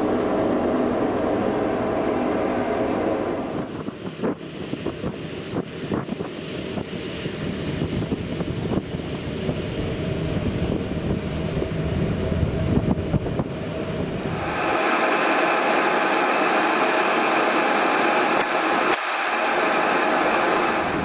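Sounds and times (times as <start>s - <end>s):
ferry engine rumble: 0.0s - 4.2s
wind buffeting microphone: 0.0s - 17.2s.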